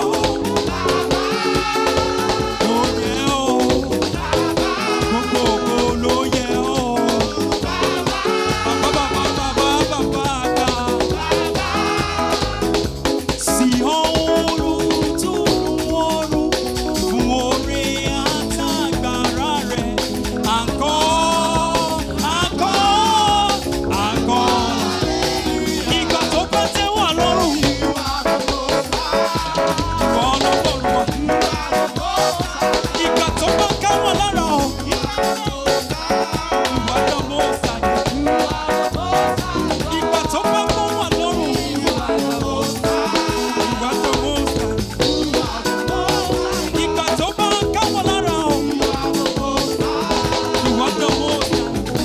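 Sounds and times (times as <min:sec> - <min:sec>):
praise band percussion: 0:00.0 - 0:52.0.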